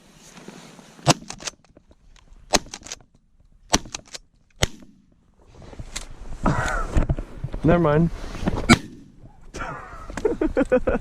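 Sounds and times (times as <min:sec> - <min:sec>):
loud shotgun shots: 0:08.7 - 0:09.2.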